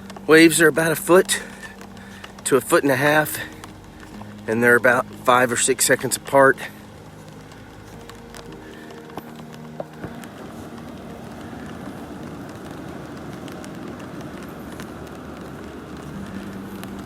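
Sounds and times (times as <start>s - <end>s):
rain hiss: 0.0s - 17.0s
raindrops ticking on plastic: 0.0s - 17.0s.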